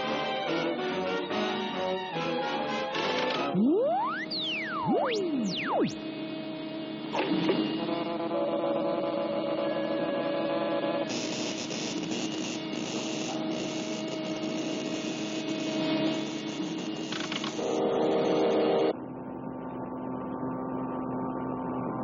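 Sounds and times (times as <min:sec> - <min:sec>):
electric machine hum: 0:00.0 - 0:09.6, 0:10.2 - 0:21.8
harsh hissing buzz: 0:11.1 - 0:17.7.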